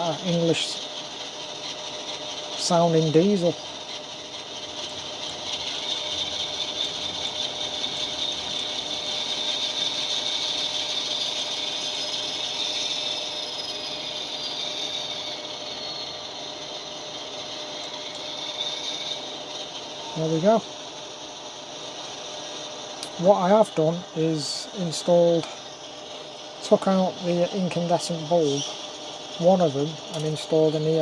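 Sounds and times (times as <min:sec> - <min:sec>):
diesel engine through small speaker: 0:02.3 - 0:03.8, 0:19.8 - 0:20.7.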